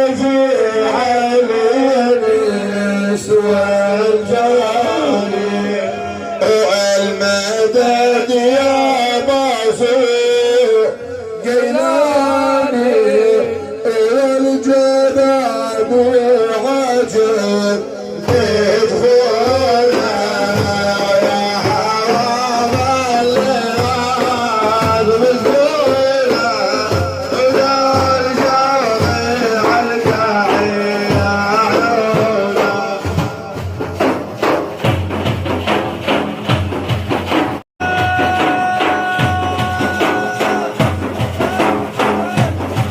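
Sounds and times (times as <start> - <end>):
man chanting: 0.0 - 34.2, 37.8 - 42.9
hand drum percussion: 18.2 - 42.9.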